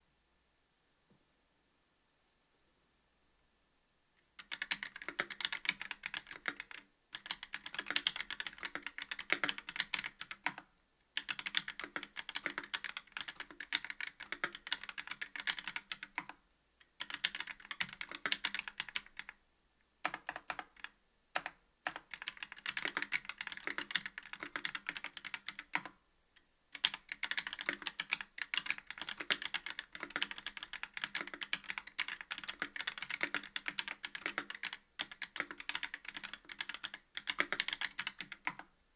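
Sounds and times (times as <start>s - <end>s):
typing on mechanical keyboard: 4.4s - 19.4s, 20.0s - 26.0s, 26.8s - 38.7s.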